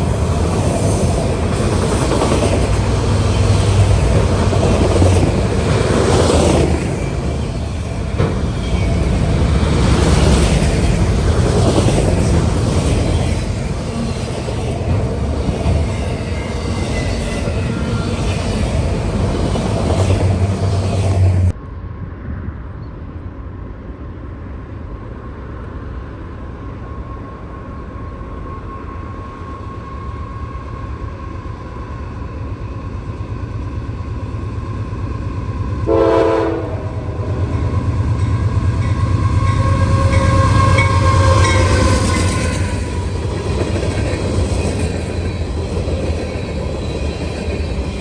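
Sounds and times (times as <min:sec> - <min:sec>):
train rumbling past: 0:00.0 - 0:48.0
locomotive horn blast: 0:35.9 - 0:37.5, 0:39.2 - 0:42.1.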